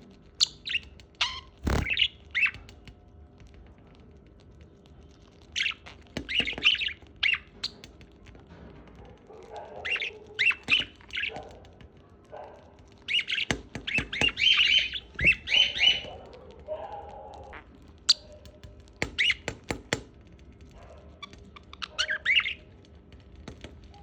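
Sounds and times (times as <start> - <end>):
parrot squawking and chirping: 0.4 - 2.8, 5.4 - 8.0, 9.2 - 11.8, 12.5 - 20.0, 21.1 - 22.8
sharp clicks: 0.5 - 3.0.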